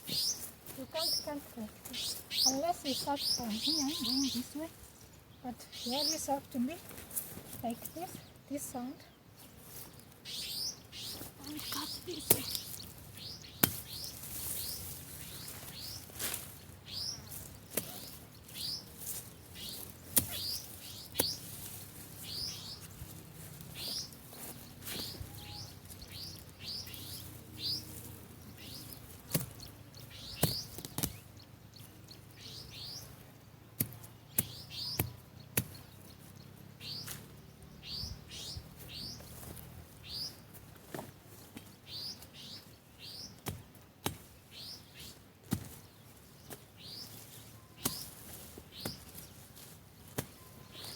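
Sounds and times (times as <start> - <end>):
bird chirping: 0.0 - 6.8, 7.6 - 40.5, 41.6 - 43.4, 44.4 - 45.2, 45.8 - 49.4, 50.0 - 50.9
sharp knocks of weed cutting: 11.6 - 12.9, 13.5 - 14.4, 17.7 - 18.2, 19.7 - 21.7, 29.2 - 29.7, 30.3 - 31.2, 33.8 - 36.0, 43.4 - 44.4, 45.1 - 45.9, 47.8 - 50.9.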